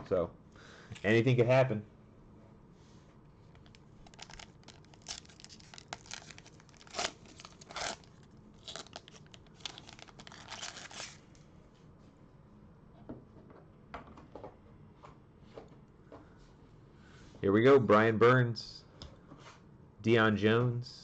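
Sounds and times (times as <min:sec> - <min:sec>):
card pack wrapper crinkling and tearing: 0:03.6 - 0:11.2
wrapper rustling: 0:03.6 - 0:11.2.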